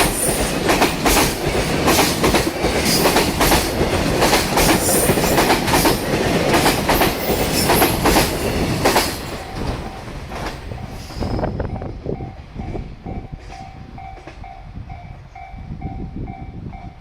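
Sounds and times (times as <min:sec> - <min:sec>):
train wheels clattering over rail joints: 0:00.0 - 0:11.4.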